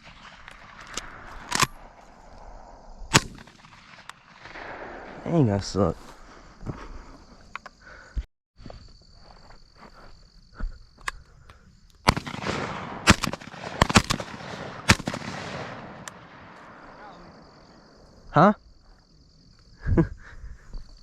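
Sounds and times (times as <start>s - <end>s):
shotgun fire: 3.1s - 5.2s, 12.1s - 17.3s.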